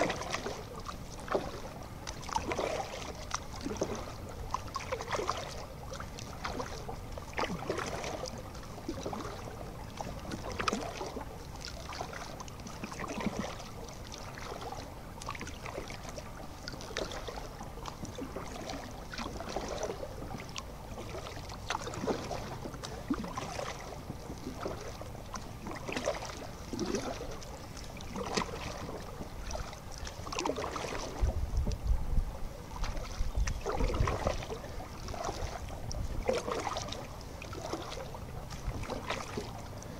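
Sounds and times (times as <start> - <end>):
paddle splashing water: 0.0 - 39.9
water lapping at hull: 0.0 - 39.9
wind rumble on microphone: 30.9 - 36.8.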